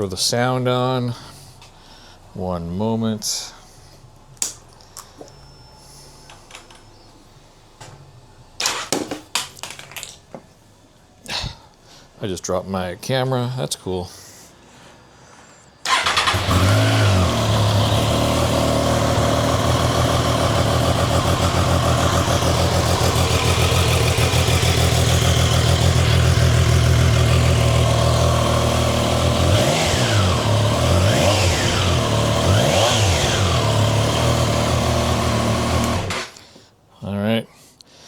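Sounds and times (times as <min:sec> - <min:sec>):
motorcycle engine idling and revving: 0:15.9 - 0:36.4.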